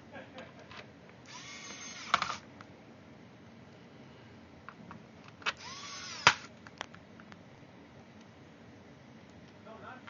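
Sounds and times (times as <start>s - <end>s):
electric screwdriver whirring: 1.3s - 2.4s, 5.5s - 6.5s.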